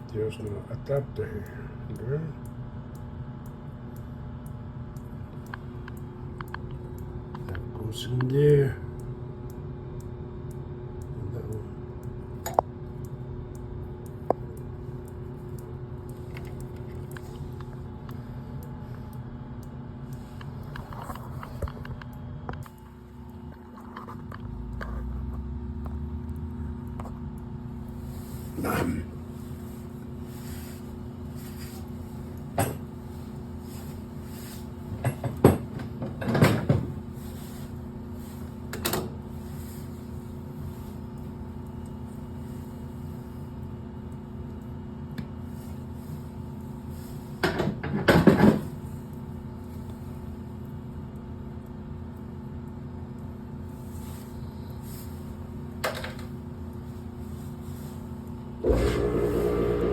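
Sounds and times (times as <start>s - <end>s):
steady hum with low tones: 0.0s - 59.9s
clunks and rattles of tools: 35.0s - 36.9s.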